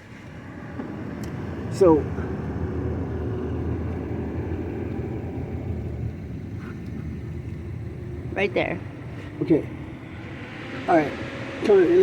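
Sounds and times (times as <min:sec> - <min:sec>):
low rumble: 0:00.3 - 0:12.0.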